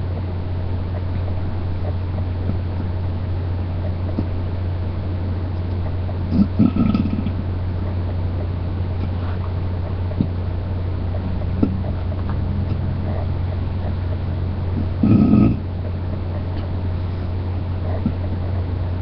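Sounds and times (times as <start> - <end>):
steady low hum: 0.0 - 19.0
person burping: 6.3 - 7.4, 14.8 - 15.6.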